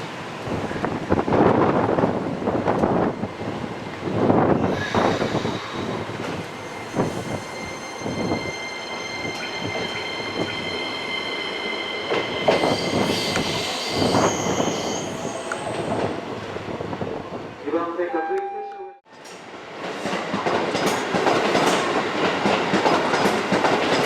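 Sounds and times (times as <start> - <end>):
train wheels clacking on rails: 4.6 - 16.6, 19.2 - 24.0
high-pitched squeal: 4.7 - 16.4.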